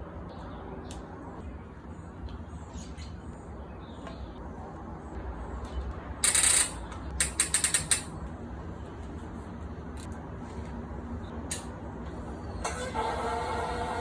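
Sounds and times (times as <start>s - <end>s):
ratchet wrench clicks: 6.2s - 8.1s.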